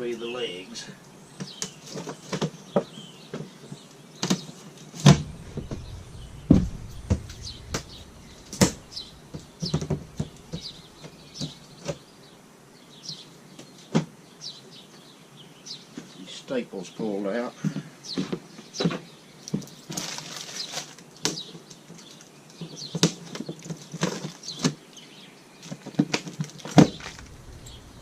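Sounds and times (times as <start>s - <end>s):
heavy thump: 5.1s - 11.8s, 26.8s - 28.0s
birds chirping faintly: 5.1s - 17.2s, 26.7s - 28.0s.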